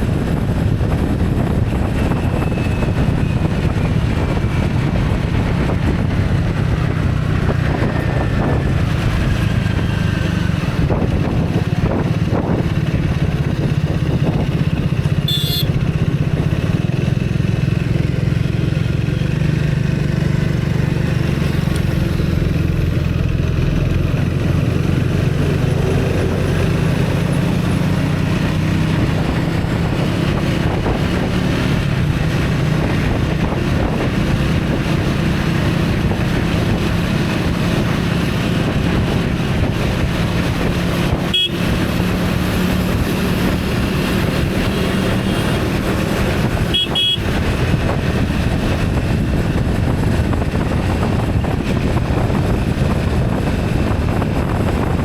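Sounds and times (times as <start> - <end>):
road noise: 0.0 - 55.0
vehicle engine running: 0.0 - 55.0
high-pitched horn toot: 15.3 - 15.8, 41.2 - 41.7, 46.7 - 47.3.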